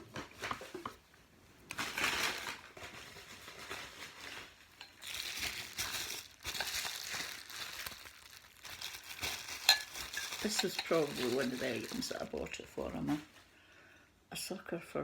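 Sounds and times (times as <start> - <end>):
packing paper crumpling: 1.7 - 13.2.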